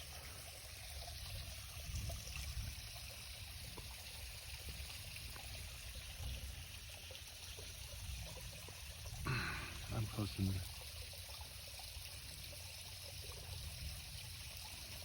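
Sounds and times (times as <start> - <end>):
water running down a creek: 0.0 - 15.0.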